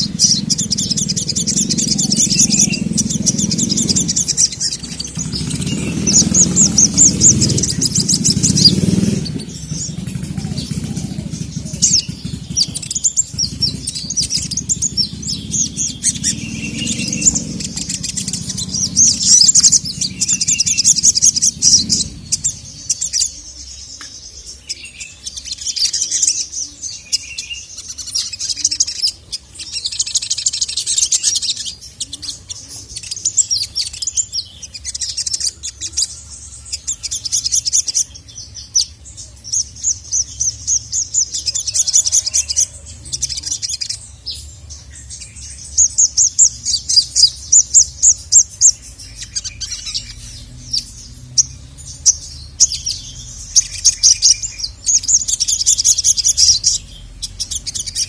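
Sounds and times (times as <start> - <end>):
low rumble: 0.0 - 23.3
sunbird twittering chirps and trills: 0.0 - 58.0.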